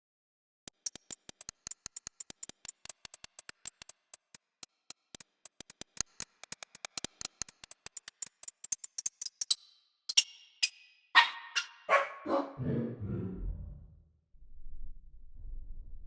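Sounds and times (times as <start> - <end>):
sharp clicks: 0.7 - 10.8.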